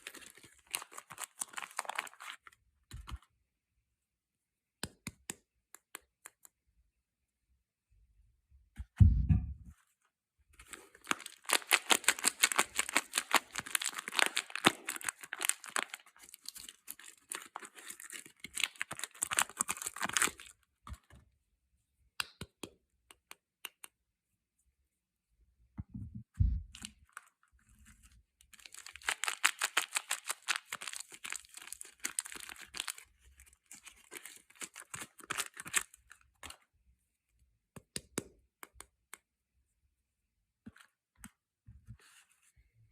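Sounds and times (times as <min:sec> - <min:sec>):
packaging crackling: 0:00.0 - 0:02.4, 0:11.0 - 0:20.5, 0:28.6 - 0:33.0
low thump: 0:08.9 - 0:09.7.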